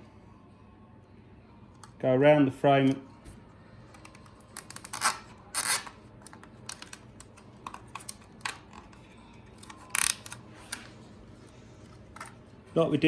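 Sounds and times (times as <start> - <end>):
zip tie ratcheting rasps: 4.6 - 6.0, 9.9 - 10.4.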